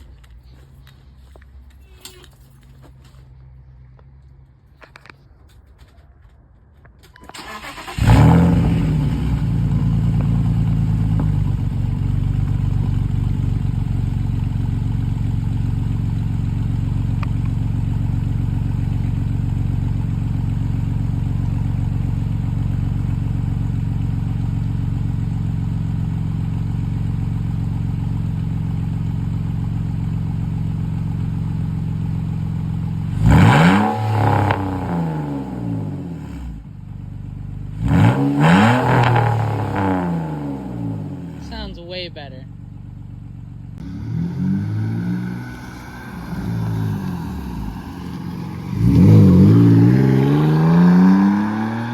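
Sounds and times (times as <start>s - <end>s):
car engine revving: 7.4s - 23.8s, 32.5s - 36.7s, 37.6s - 51.9s
car engine idling open exhaust: 8.0s - 33.3s, 34.5s - 38.0s, 39.5s - 43.9s.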